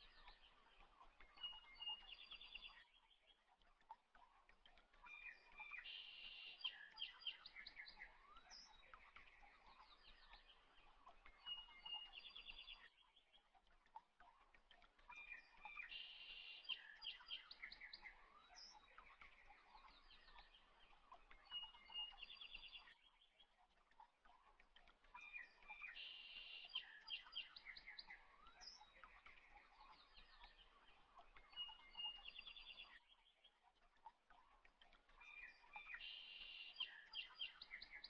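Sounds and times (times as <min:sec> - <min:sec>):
faint birdsong chirps and trills: 0:00.0 - 0:38.0.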